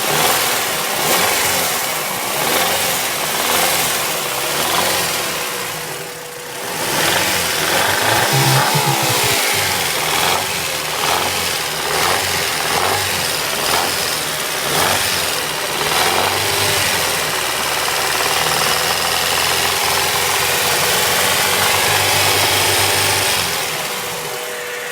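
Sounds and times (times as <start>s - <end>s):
car engine running: 6.8s - 11.0s
engine knocking: 11.0s - 23.0s.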